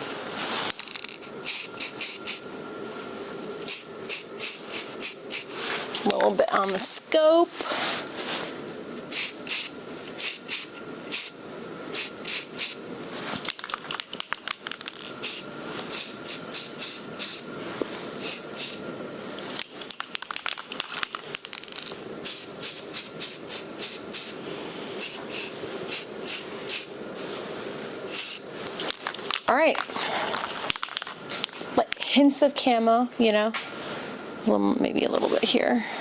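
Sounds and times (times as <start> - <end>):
spray-paint can hissing: 1.4 - 2.4, 3.7 - 5.5, 9.1 - 11.3, 11.9 - 12.8, 15.2 - 17.5, 18.2 - 18.8, 22.2 - 24.4, 25.0 - 26.9, 28.1 - 28.4.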